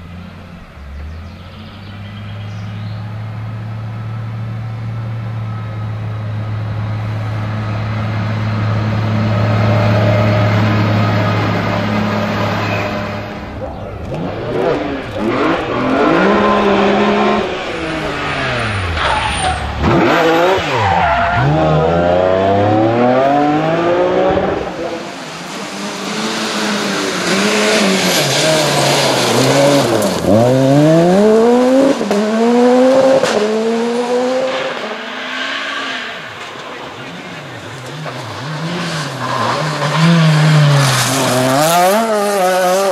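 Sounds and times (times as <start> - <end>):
rally car engines revving: 0.0 - 42.9
tyre squeal: 17.7 - 21.8.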